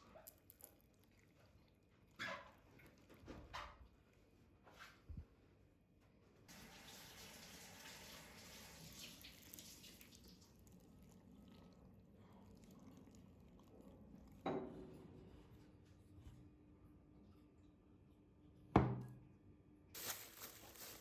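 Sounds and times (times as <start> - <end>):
tap water running into sink: 6.5 - 10.6.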